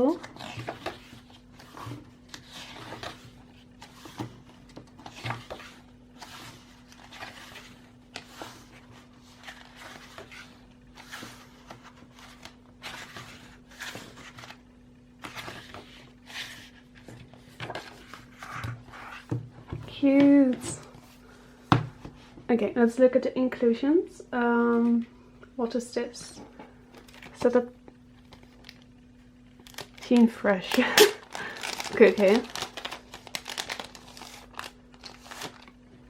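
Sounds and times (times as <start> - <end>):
paper and plastic rustling: 0.0 - 21.3, 26.6 - 36.0
faint steady hum: 0.0 - 36.0
pages turning: 0.1 - 19.4, 28.1 - 29.0, 29.6 - 35.9.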